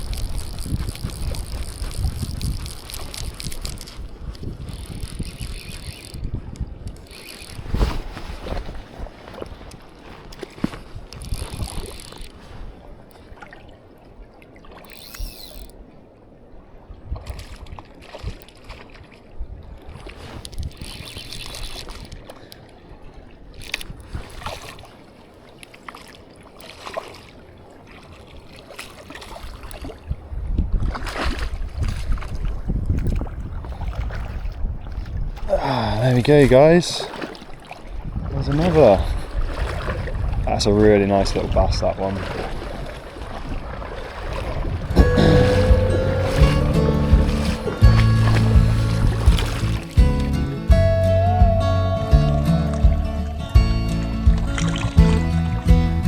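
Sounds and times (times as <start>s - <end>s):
fishing tackle clicking and rattling: 0.0s - 7.7s, 9.7s - 12.4s, 14.8s - 15.8s, 20.4s - 22.6s, 23.6s - 24.0s, 45.0s - 50.3s
wind buffeting microphone: 0.0s - 25.0s, 29.4s - 50.4s
water sloshing: 0.0s - 50.5s, 54.2s - 55.2s.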